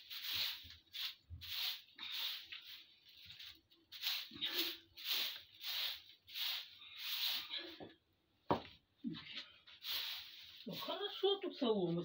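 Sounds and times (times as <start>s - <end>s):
hand tool swishing through straw: 0.0s - 7.7s, 9.7s - 11.2s.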